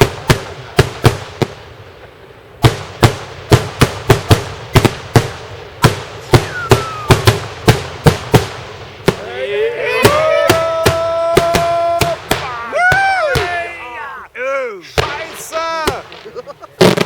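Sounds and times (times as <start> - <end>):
fireworks bangs: 0.0 - 17.0
falling firework whistle: 5.8 - 7.4.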